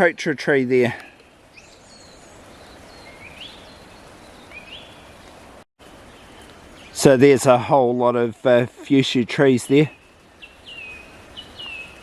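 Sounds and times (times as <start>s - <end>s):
faint forest hiss: 0.0s - 12.0s
bird calls: 0.9s - 5.4s, 8.9s - 12.0s.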